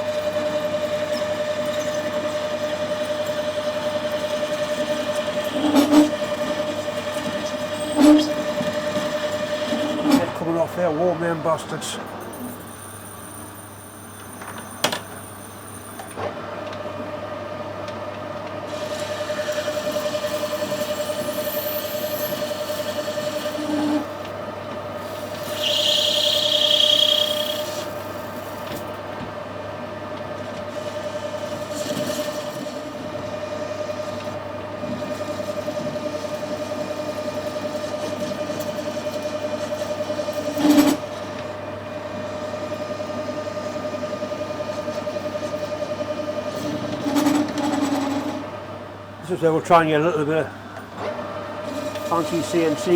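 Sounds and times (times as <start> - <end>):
metal lathe humming: 0.0 - 13.2, 18.7 - 28.7, 30.8 - 52.9
high-pitched cutting squeal: 20.3 - 24.1, 25.0 - 28.2.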